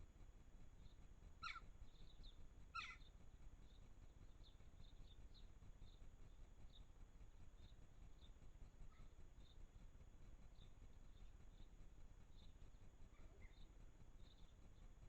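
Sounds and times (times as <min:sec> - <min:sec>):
soft high bird chirps: 0:00.8 - 0:06.1
louder falling bird calls: 0:01.4 - 0:01.7, 0:02.7 - 0:03.0.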